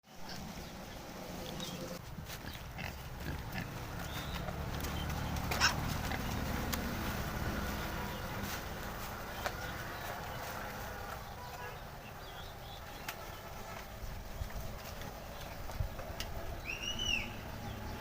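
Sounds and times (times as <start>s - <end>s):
pigs grunting: 2.2s - 8.5s.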